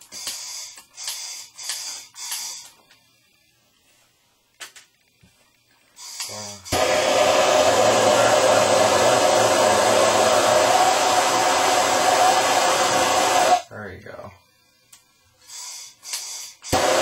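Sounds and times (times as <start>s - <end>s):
gas torch burning: 0.0s - 3.1s, 5.9s - 13.7s, 14.8s - 17.0s.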